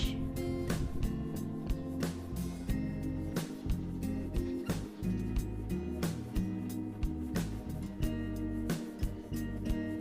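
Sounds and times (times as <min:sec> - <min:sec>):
background music with guitar: 0:00.0 - 0:10.0.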